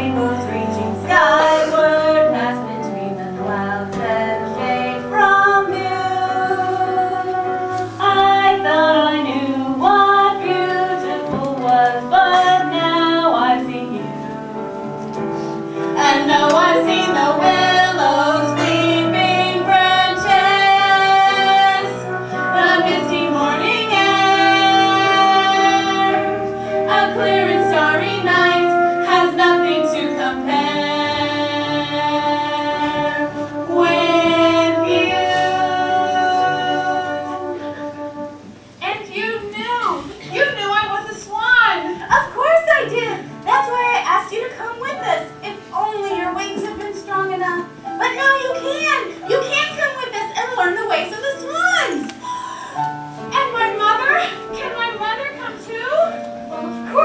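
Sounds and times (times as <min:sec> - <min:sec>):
woman singing: 0:00.0 - 0:14.4, 0:16.0 - 0:38.1
instrumental accompaniment: 0:00.0 - 0:57.0.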